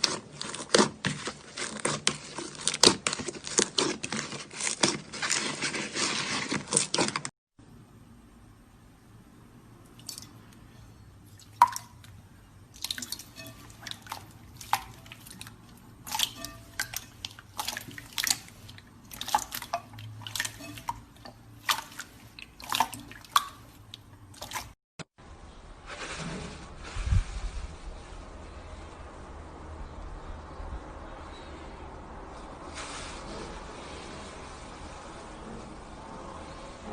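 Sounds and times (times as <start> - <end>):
slime popping and clicking wetly: 12.8 - 24.8.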